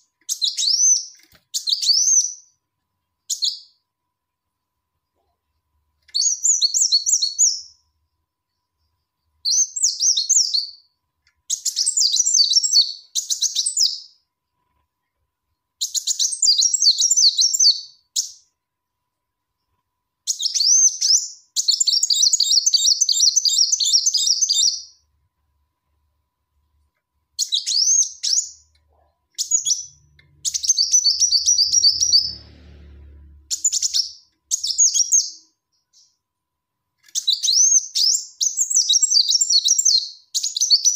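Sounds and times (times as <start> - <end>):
faint low rumble: 28.7 - 34.5
sunbird chirping: 29.4 - 36.2.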